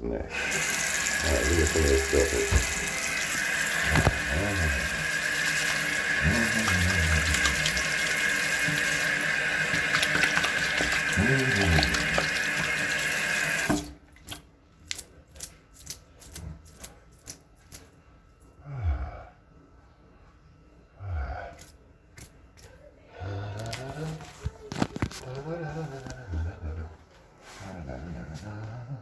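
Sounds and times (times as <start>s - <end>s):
water running from a tap: 0.3s - 14.0s.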